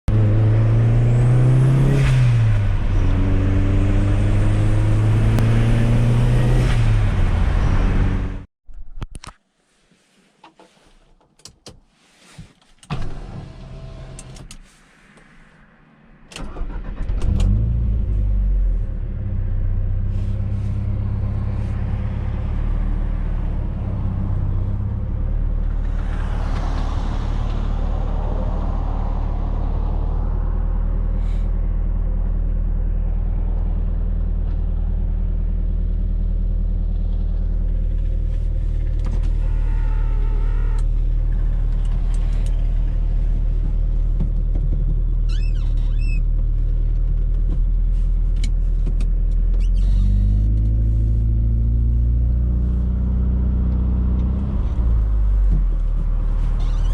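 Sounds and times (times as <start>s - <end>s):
car engine starting and idling: 12.8s - 14.8s, 16.2s - 27.6s, 33.8s - 56.9s.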